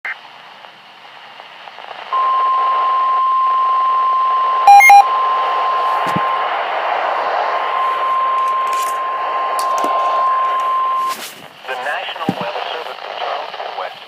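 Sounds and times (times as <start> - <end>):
faint static hiss: 0.1 - 14.0
short loud beeps: 2.2 - 6.4, 7.7 - 11.2
steady warning alarm tone: 2.2 - 11.2.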